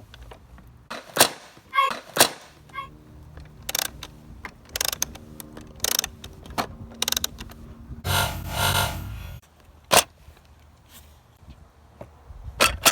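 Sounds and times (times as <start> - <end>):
plastic toy clicking and rattling: 3.6 - 7.5
steady low hum: 7.6 - 9.4
rushing rattle: 8.0 - 9.4.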